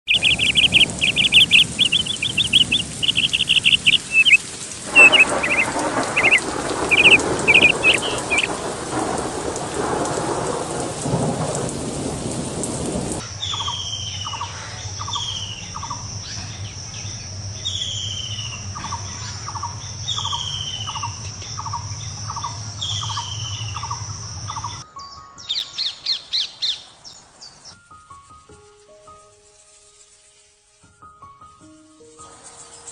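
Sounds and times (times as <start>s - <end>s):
descending bird whistles: 0.1s - 8.5s
birds chirping and calling: 0.1s - 8.6s, 13.4s - 24.8s, 25.4s - 27.8s
rushing rain-like noise: 0.1s - 24.8s, 32.0s - 32.9s.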